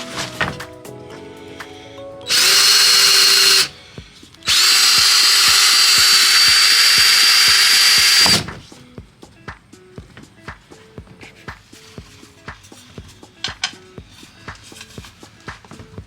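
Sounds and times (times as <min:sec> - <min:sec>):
power drill whining: 0:02.3 - 0:08.6.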